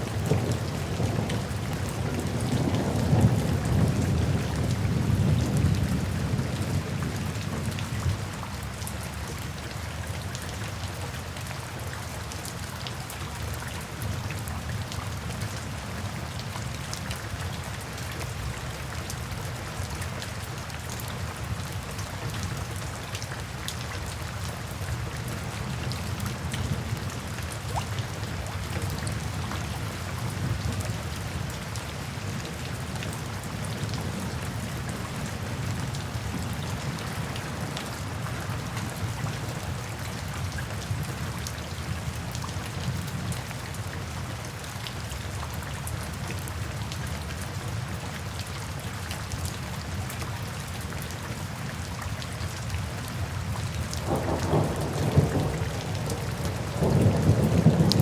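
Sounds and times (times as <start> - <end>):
steady rain falling: 0.0 - 58.0
thunder rumble: 54.0 - 58.0.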